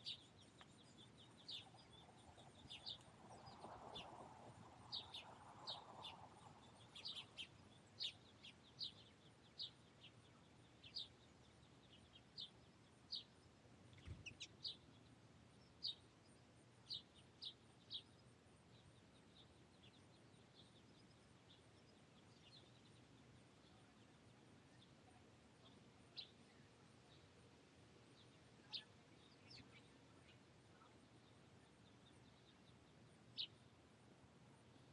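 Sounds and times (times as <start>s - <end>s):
finches chirping: 0.0s - 23.0s.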